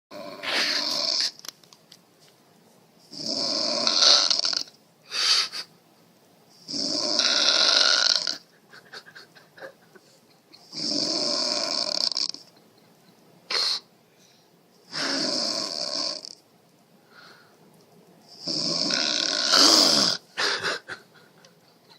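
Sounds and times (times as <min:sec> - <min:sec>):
woman snoring loudly: 0:00.1 - 0:01.4, 0:03.1 - 0:04.7, 0:06.7 - 0:08.4, 0:10.7 - 0:12.4, 0:14.9 - 0:16.4, 0:18.3 - 0:20.2.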